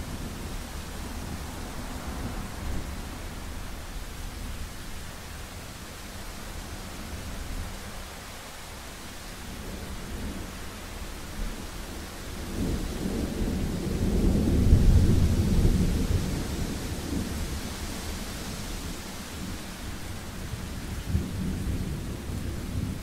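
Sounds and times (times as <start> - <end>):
steady rain: 0.0 - 23.0.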